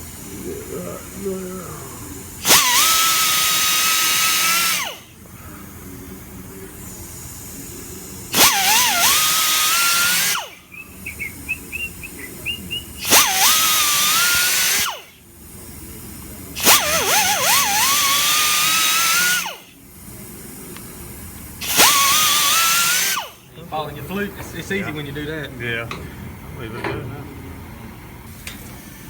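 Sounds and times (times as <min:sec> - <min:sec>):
power drill motor whine: 0:02.4 - 0:05.2, 0:08.4 - 0:15.9, 0:16.5 - 0:19.8, 0:21.6 - 0:23.5.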